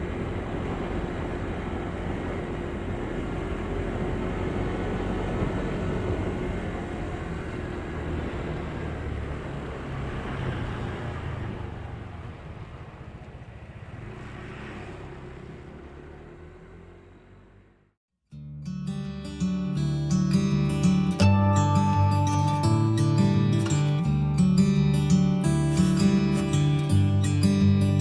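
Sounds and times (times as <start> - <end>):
vehicle engine hum: 0.0 - 18.0, 18.6 - 28.0
road rumble: 0.0 - 28.0.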